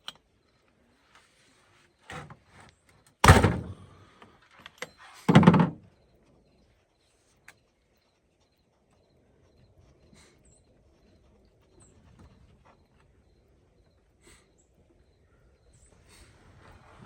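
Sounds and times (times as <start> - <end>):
heavy thunks of tools handled: 4.7 - 5.8.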